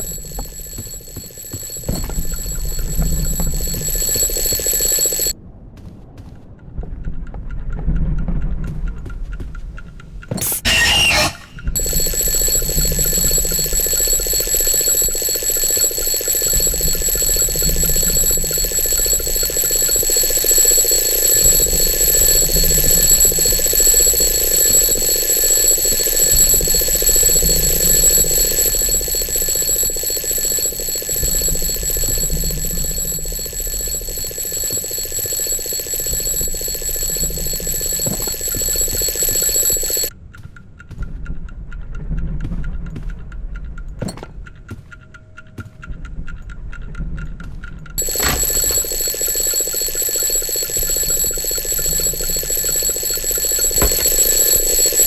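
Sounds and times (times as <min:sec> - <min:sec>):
alarm clock ringing: 0:00.0 - 0:05.4, 0:10.4 - 0:40.1, 0:48.0 - 0:55.0.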